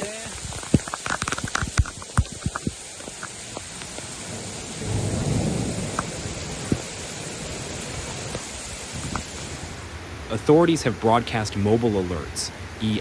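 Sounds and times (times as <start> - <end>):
raindrop clicks: 0.0 - 4.3, 5.8 - 7.0, 8.3 - 9.6
heavy rain hiss: 0.0 - 13.0
thunder rumble: 3.4 - 11.5.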